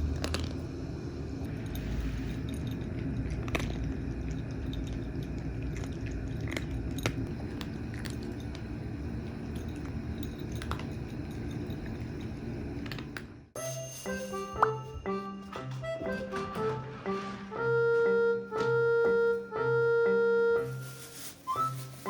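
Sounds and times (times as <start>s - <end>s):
cats crunching food: 0.0s - 0.7s, 1.4s - 13.4s.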